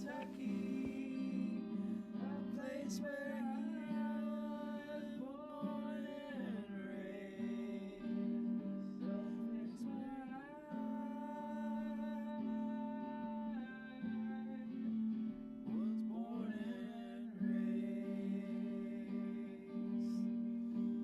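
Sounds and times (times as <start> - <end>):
acoustic guitar playing: 0.0 - 21.0.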